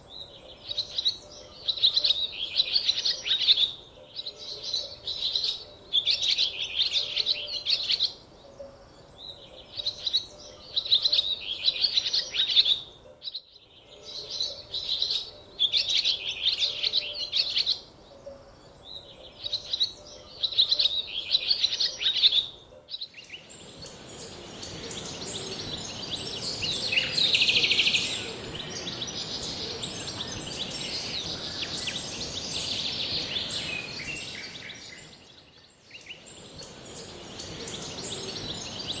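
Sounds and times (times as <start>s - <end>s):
outdoor noise: 0.0s - 39.0s
high-pitched hiss: 23.1s - 39.0s
songbird warbling: 23.1s - 39.0s.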